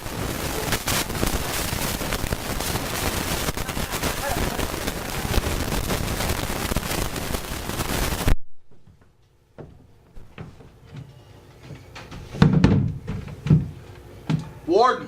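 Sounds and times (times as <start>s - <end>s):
loud rush of noise: 0.0s - 8.3s
knocks and thumps: 12.0s - 14.5s.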